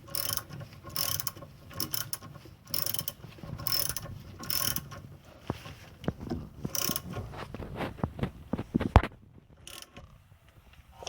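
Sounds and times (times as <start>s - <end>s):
ratchet wrench ratcheting: 0.1s - 5.0s, 6.7s - 7.1s, 9.6s - 10.0s.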